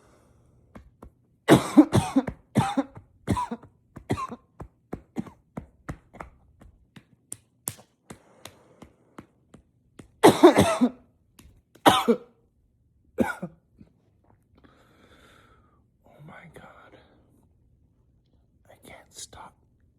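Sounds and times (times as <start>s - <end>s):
man coughing into a pillow: 1.5s - 5.6s, 10.2s - 11.1s, 11.8s - 12.4s, 13.2s - 13.6s.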